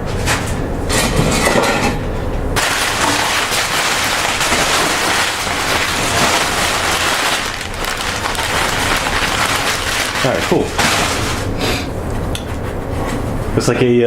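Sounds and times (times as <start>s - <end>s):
packaging crinkling and rustling: 2.6s - 13.4s.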